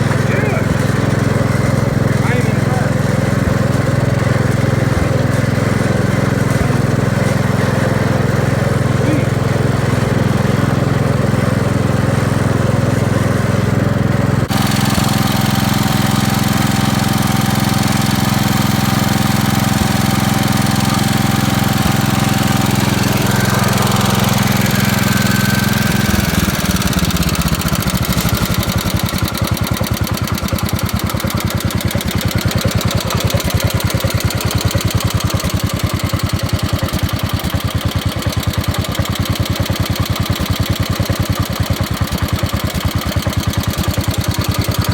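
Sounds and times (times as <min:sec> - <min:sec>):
engine running and putting: 0:00.0 - 0:44.9.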